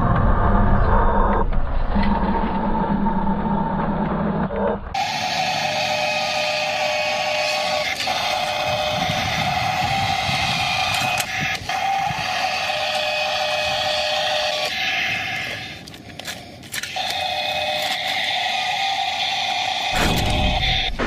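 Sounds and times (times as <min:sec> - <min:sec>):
small electric motor whirring: 0:04.9 - 0:21.0.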